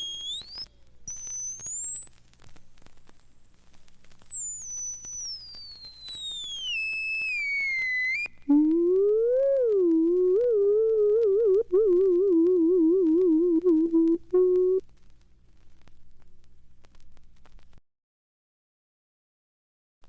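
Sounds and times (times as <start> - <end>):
high electronic sine tone sliding: 0.0 - 14.8.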